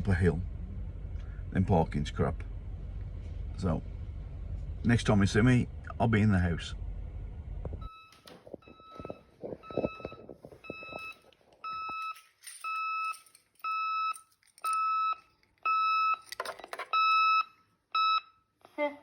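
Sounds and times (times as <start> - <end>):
footsteps: 7.7 - 12.1
intruder alarm beeping: 7.9 - 16.3, 17.0 - 18.4.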